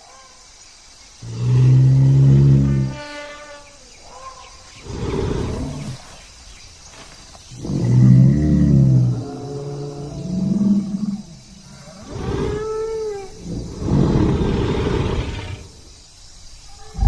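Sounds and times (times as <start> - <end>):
rough noisy creature call: 1.2 - 3.1, 4.8 - 6.0, 7.5 - 15.9.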